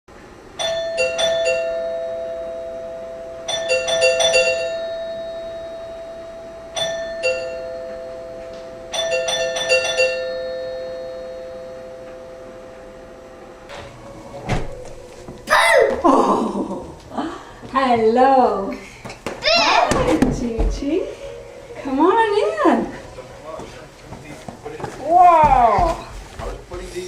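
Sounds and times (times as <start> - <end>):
two-tone chime doorbell: 0.6 - 15.4.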